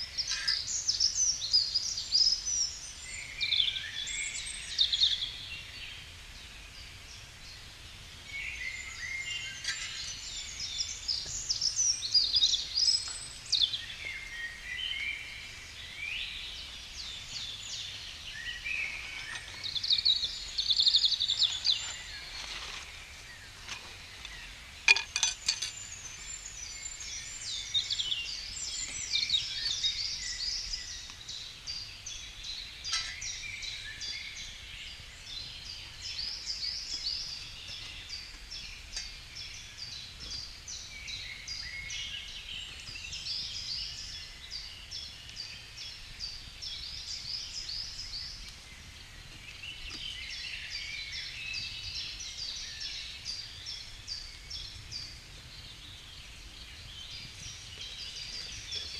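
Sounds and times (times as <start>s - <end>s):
songbirds singing: 0.0s - 58.9s.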